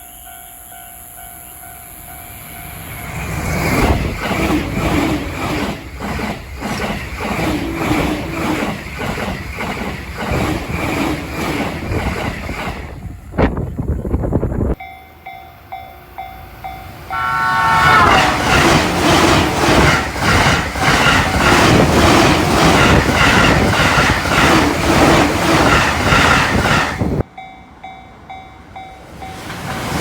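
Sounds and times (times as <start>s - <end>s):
train passing at high speed: 0.0s - 30.0s
wheels clacking over rail joints: 3.0s - 13.6s, 17.1s - 27.2s, 28.8s - 30.0s.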